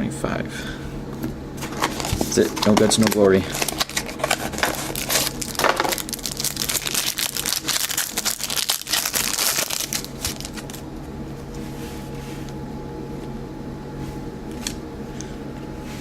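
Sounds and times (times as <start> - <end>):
wrapper crinkling and tearing: 1.6 - 10.8.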